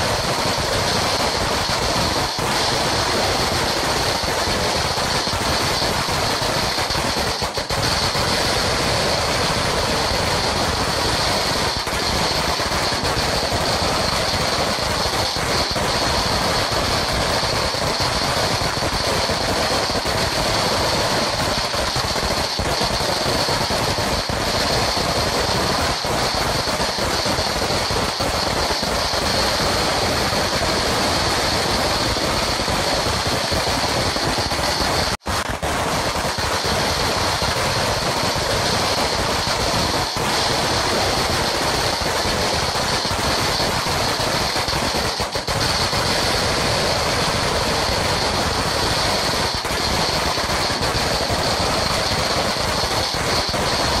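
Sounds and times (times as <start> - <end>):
firecracker string rapid pops: 0.0 - 54.0.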